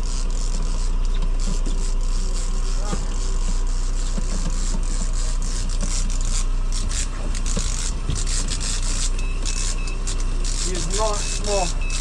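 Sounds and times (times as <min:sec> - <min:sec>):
boat motor humming: 0:02.4 - 0:12.0.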